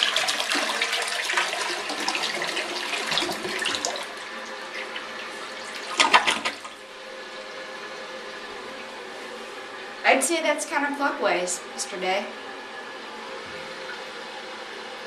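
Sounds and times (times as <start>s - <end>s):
toilet flushing: 0.0s - 9.0s, 13.3s - 15.0s.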